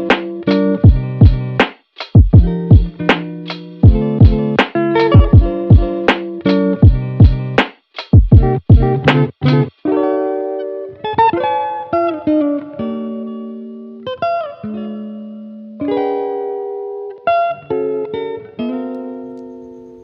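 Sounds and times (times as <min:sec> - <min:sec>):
plucked guitar chords: 0:00.0 - 0:01.6, 0:02.2 - 0:07.6, 0:08.2 - 0:20.0.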